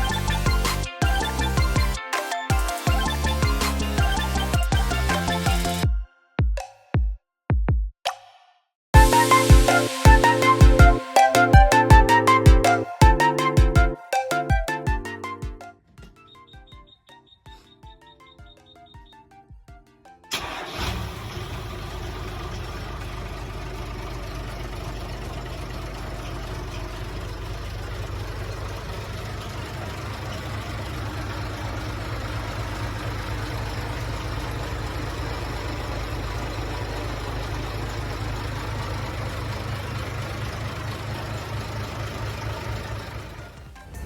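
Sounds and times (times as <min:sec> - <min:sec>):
diesel boat engine idling: 0:20.3 - 0:43.8.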